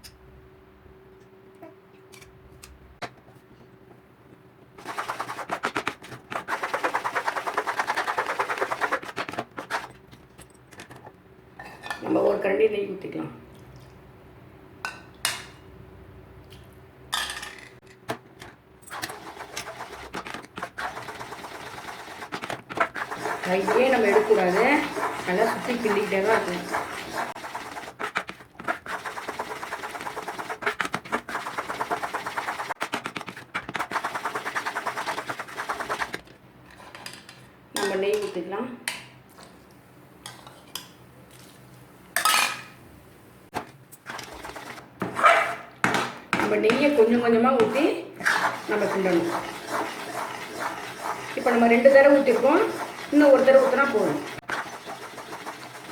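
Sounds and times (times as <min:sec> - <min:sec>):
mixture sizzling and popping: 0:18.9 - 0:36.3, 0:46.7 - 0:55.9
spoon scraping pan: 0:19.2 - 0:33.0, 0:46.7 - 0:55.9
ghee pouring rush: 0:48.3 - 0:55.9.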